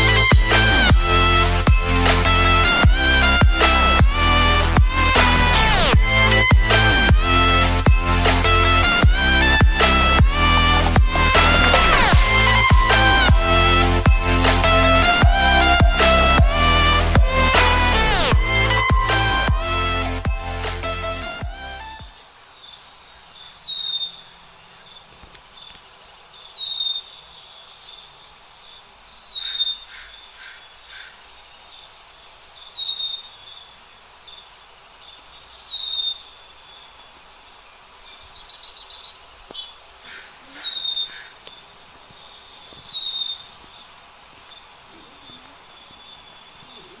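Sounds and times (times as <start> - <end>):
insect chorus: 22.1 - 47.0.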